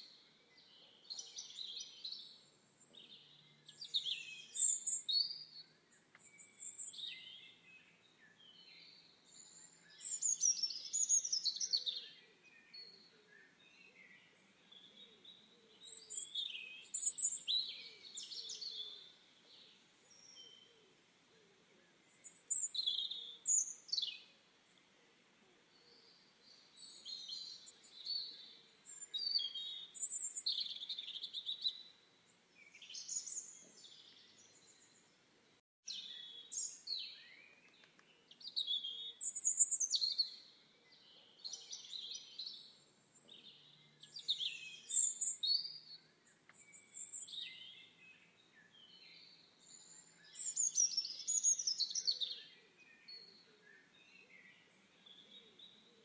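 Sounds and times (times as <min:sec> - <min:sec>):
songbirds chirping and warbling: 0:00.0 - 0:56.0
faint steady background hiss: 0:12.4 - 0:41.0.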